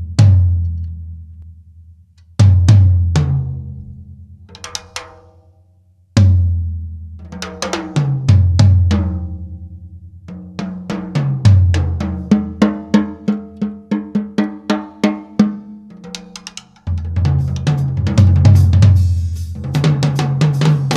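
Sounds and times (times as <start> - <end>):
acoustic drum kit fills: 0.0 - 0.6, 2.4 - 3.6, 4.5 - 5.4, 6.2 - 9.5, 10.2 - 20.9.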